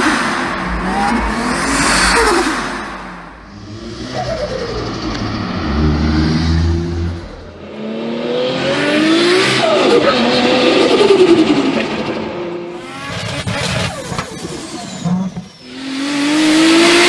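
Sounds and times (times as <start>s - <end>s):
turbocharged car engine revving: 0.0s - 17.0s.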